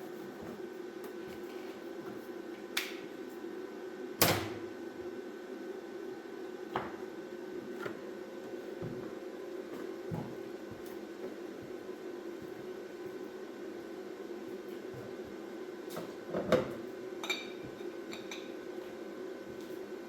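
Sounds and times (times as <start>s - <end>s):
workshop hum: 0.0s - 20.0s.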